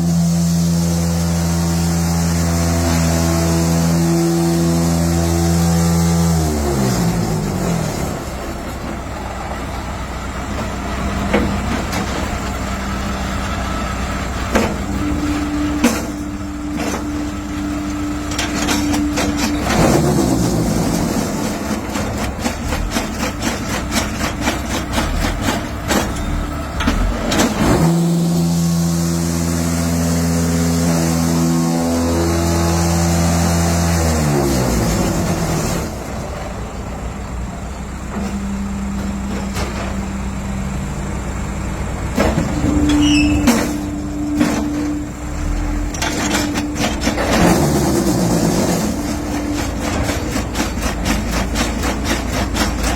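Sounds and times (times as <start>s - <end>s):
hydraulic hum: 0.0s - 52.9s
fast machine clattering: 49.2s - 52.9s.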